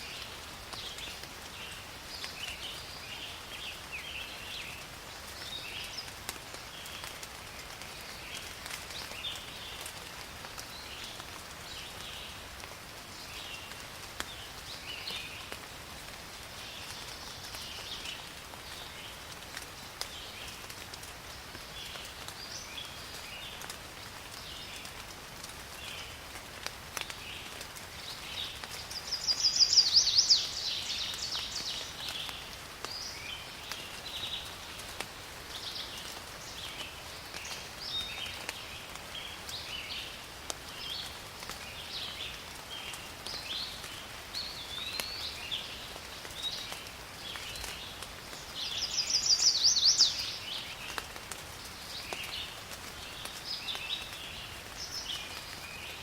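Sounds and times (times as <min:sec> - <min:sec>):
rain hissing: 0:00.0 - 0:56.0
birds chirping: 0:28.0 - 0:34.6, 0:43.4 - 0:51.0.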